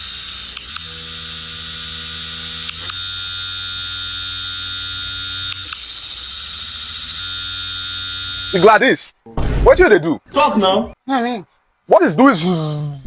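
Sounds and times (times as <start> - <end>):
electric buzz of vibrating device: 0.0 - 8.7.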